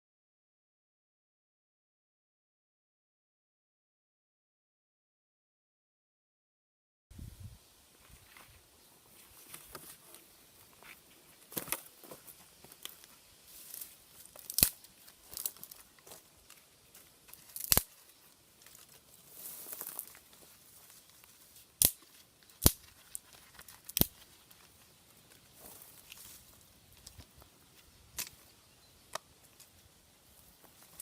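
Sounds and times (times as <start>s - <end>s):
rustling and crinkling handling noise: 8.0s - 28.5s.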